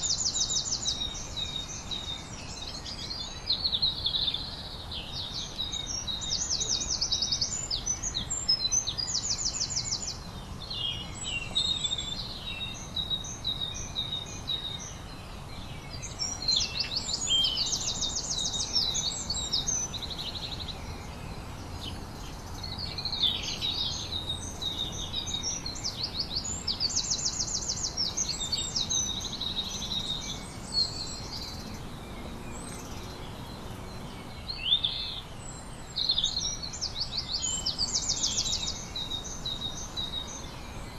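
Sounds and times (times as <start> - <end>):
songbirds singing and chirping: 0.0 - 40.9
low steady background rumble: 16.2 - 34.4, 37.4 - 40.9.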